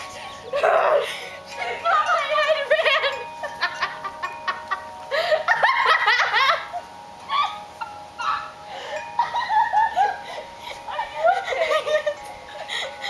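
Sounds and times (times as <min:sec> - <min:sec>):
high-pitched cackling laughter: 0:02.0 - 0:08.6, 0:09.2 - 0:13.0.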